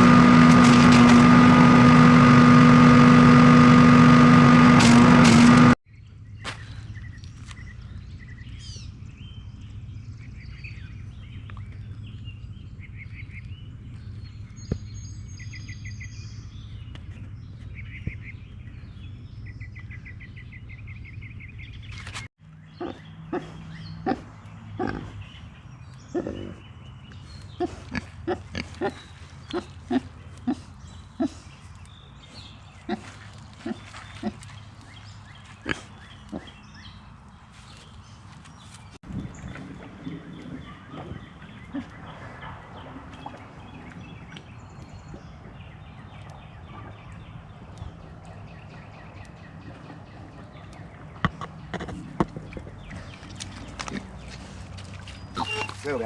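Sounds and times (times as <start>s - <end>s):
small engine running: 0.0s - 5.8s
birds chirping in trills: 0.0s - 56.0s
pigs grunting: 22.7s - 31.7s, 32.7s - 34.6s, 35.5s - 36.8s, 39.5s - 56.0s.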